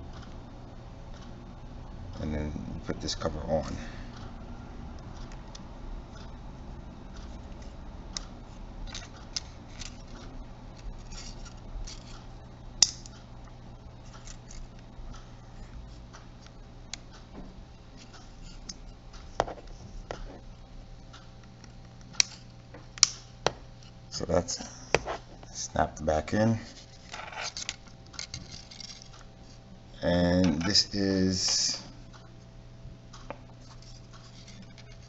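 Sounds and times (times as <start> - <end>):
plastic scratching and rubbing: 8.9 - 12.3, 33.6 - 35.0.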